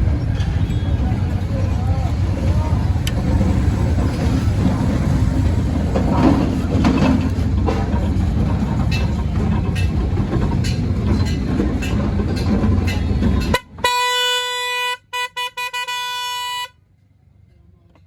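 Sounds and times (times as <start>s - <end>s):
loud rumbling noise: 0.0s - 13.6s
car horn honking: 13.6s - 16.8s.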